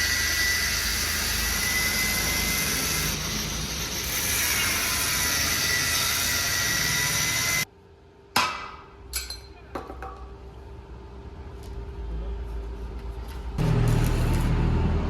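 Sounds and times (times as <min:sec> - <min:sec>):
power tool hissing whine: 0:00.0 - 0:07.7.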